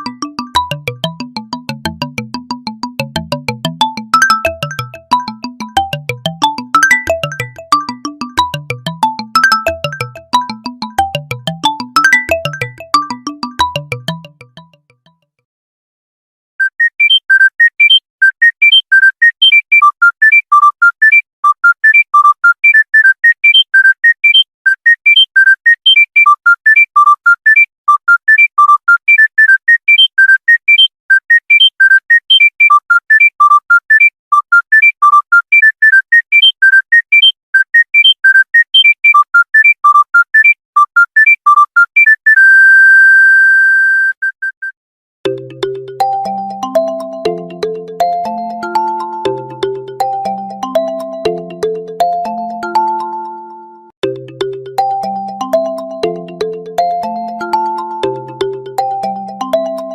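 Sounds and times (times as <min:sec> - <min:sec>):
electronic phone ringtone: 0:00.0 - 0:14.9, 0:16.6 - 0:44.6, 0:45.3 - 0:59.9
lower ringtone: 0:00.0 - 0:14.9, 0:45.3 - 0:59.9.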